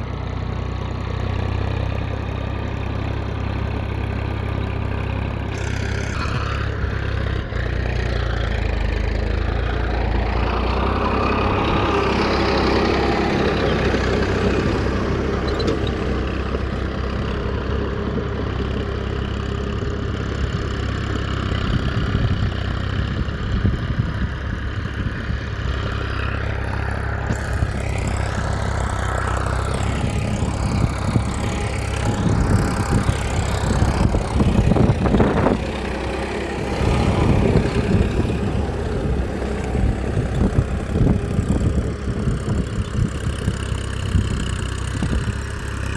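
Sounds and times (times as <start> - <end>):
motor humming: 27.2 - 43.2.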